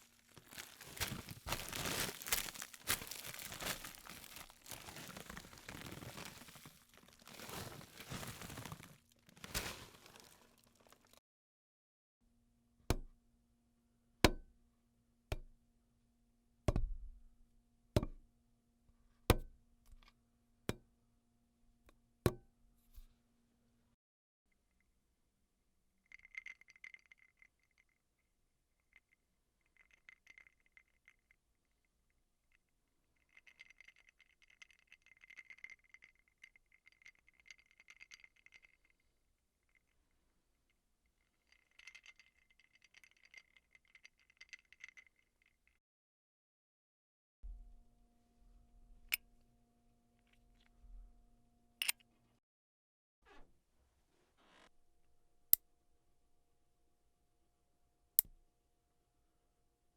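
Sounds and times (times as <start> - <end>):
ice cubes clinking in a cup: 0.0 - 11.2, 33.2 - 39.0, 41.3 - 45.3
light taps on bottle: 16.7 - 17.1, 19.3 - 20.1.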